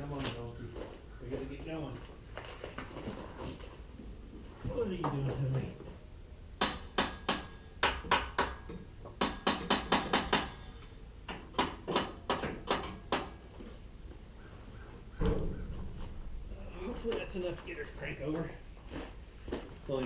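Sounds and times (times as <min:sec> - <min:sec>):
sharp metallic taps: 0:06.6 - 0:10.6.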